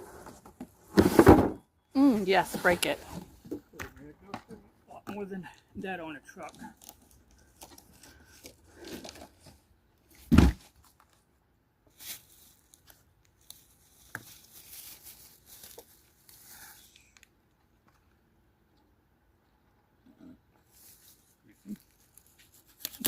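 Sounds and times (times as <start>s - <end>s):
rustling and crinkling: 6.4s - 11.3s, 11.9s - 18.2s, 20.5s - 23.0s
cardboard and styrofoam tearing: 21.5s - 23.0s.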